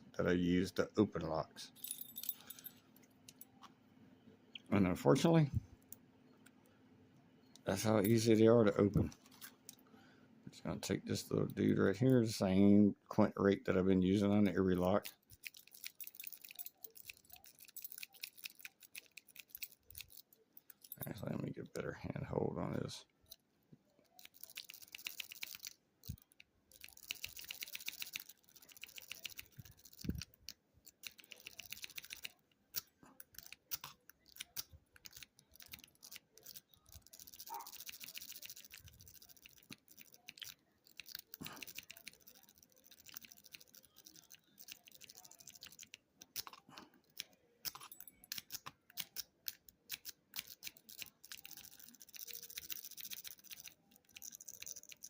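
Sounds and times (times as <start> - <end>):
lock pick clicking and scraping: 46.2 - 55.0.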